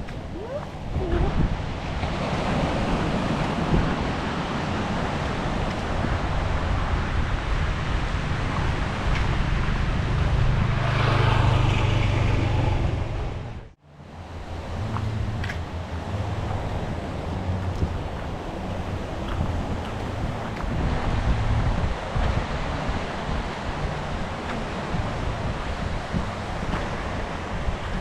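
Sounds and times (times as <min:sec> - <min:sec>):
surf rushing: 0:00.0 - 0:28.0
wind on microphone: 0:00.0 - 0:28.0
vehicle engine hum: 0:07.6 - 0:28.0.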